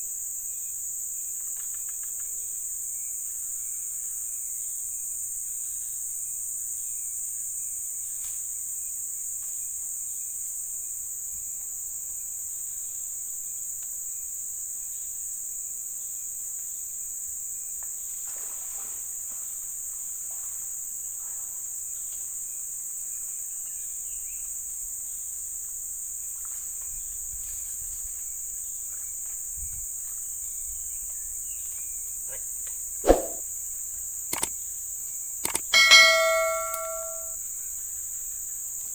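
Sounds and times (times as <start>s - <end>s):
short sharp loud sound: 33.1s - 33.4s.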